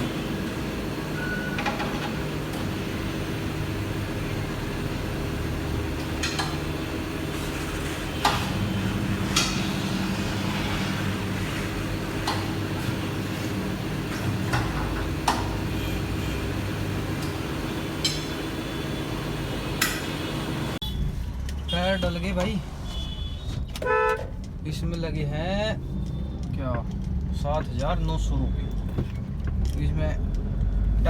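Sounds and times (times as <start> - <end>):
steady machine hum: 0.0 - 20.8.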